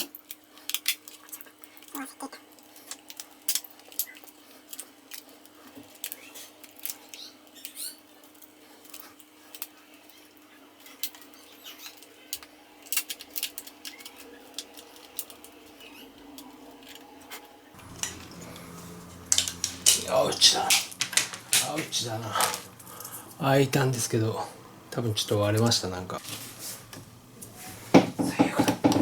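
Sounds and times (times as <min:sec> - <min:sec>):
plastic case clicking and snapping: 0:20.7 - 0:22.6.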